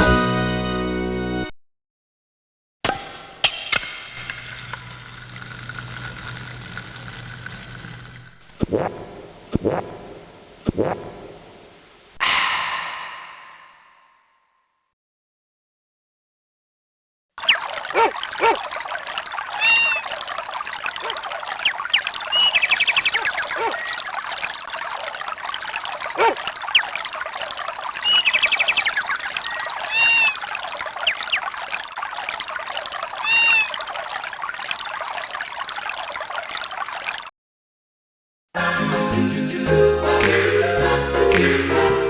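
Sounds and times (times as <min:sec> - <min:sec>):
trickle of running water: 0:03.0 - 0:10.6, 0:17.4 - 0:37.3
bird-like chirps: 0:21.0 - 0:25.2, 0:26.2 - 0:27.0, 0:28.0 - 0:31.6.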